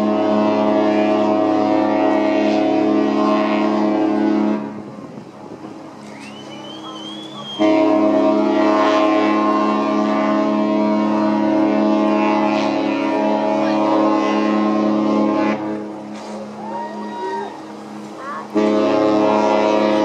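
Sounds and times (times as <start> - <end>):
ship horn blasts: 0.0 - 5.2, 6.2 - 20.0
faint whistle: 6.0 - 7.8.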